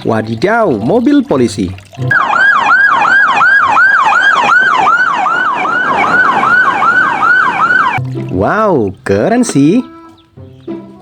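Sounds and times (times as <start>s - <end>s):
electronic police siren yelp: 2.1s - 8.0s.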